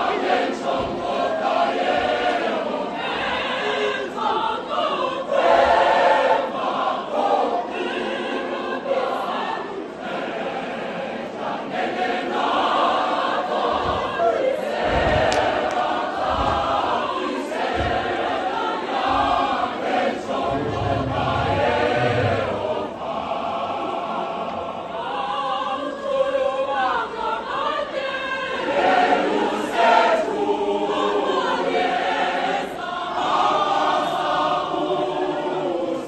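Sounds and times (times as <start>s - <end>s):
choir singing in harmony: 0.0s - 36.0s
low thuds: 13.7s - 18.4s, 20.2s - 23.0s.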